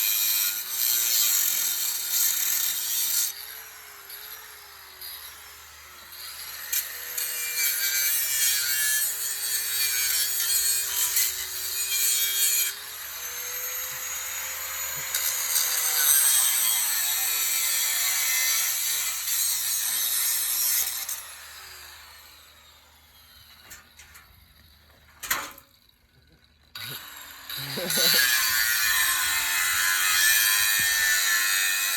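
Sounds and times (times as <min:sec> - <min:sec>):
power tool cutting: 0:00.0 - 0:23.9, 0:26.7 - 0:31.9.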